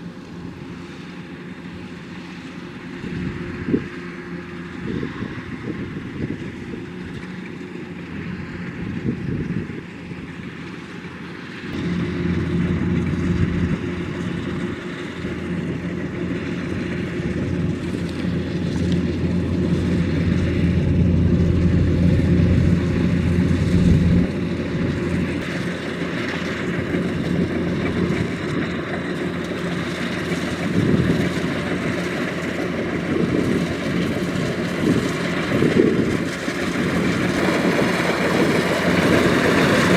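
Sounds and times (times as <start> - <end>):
combine harvester diesel engine: 0.0 - 39.9
deep low hum: 11.7 - 25.6.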